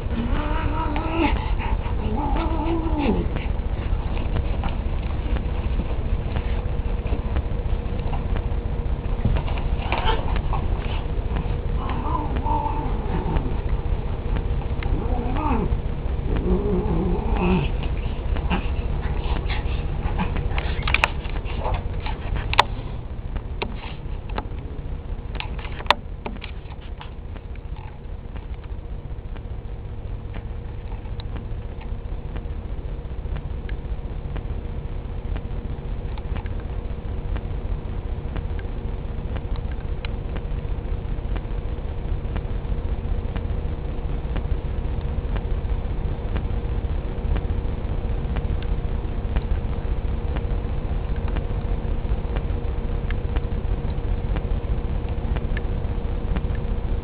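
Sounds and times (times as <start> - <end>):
dog and cat scuffling: 0.0 - 13.8, 14.4 - 23.0, 26.4 - 28.5
steady low rumble: 0.0 - 57.0
cat yowling: 0.1 - 3.3, 11.8 - 13.5, 14.9 - 15.7.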